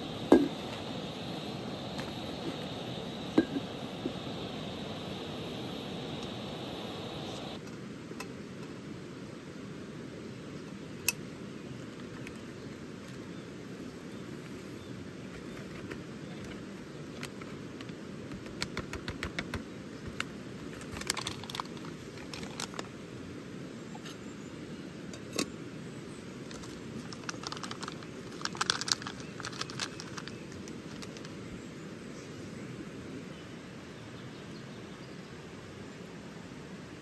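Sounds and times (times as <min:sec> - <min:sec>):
river flowing: 0:00.0 - 0:07.6.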